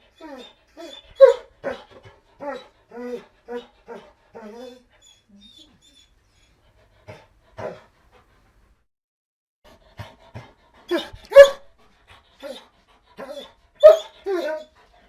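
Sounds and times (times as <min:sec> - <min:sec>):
dog whining and whimpering: 0:00.0 - 0:01.8, 0:02.4 - 0:06.6, 0:10.9 - 0:11.6, 0:12.4 - 0:12.6, 0:13.2 - 0:14.8.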